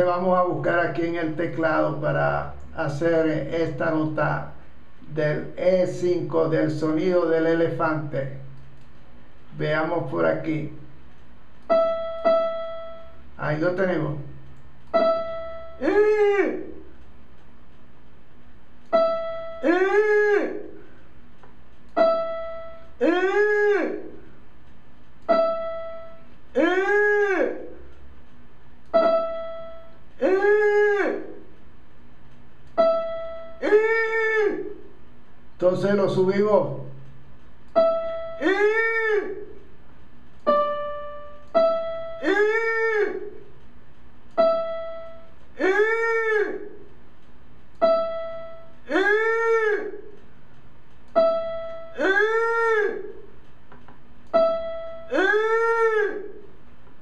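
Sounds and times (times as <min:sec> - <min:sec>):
electronic keyboard notes: 0:11.6 - 0:16.9, 0:18.8 - 0:20.8, 0:21.9 - 0:24.2, 0:25.2 - 0:27.9, 0:28.8 - 0:31.5, 0:32.7 - 0:34.8, 0:37.7 - 0:39.6, 0:40.4 - 0:43.5, 0:44.3 - 0:46.9, 0:47.7 - 0:50.2, 0:51.0 - 0:53.2, 0:54.2 - 0:56.4.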